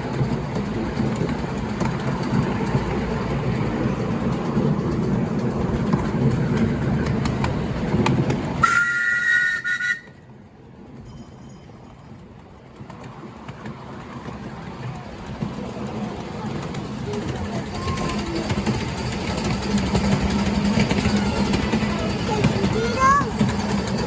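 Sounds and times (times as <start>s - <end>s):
miniature train rumbling: 0.0s - 24.0s
wheels clicking on track: 0.0s - 24.0s
two-note train horn: 8.6s - 10.2s.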